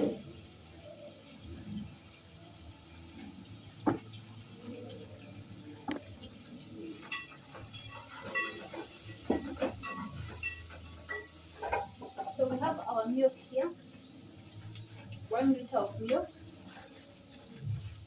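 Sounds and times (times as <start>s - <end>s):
steady high hiss: 0.0s - 18.0s
pot knocking: 3.8s - 4.1s, 7.1s - 12.8s
metallic clinks: 6.0s - 12.8s.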